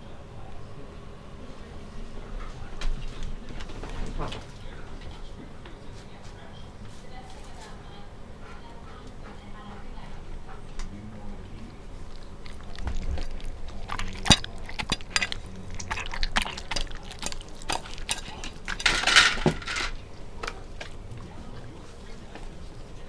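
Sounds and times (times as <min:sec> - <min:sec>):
dog licking a plate: 0:08.7 - 0:23.0
plate clinking and knocking: 0:18.1 - 0:20.0.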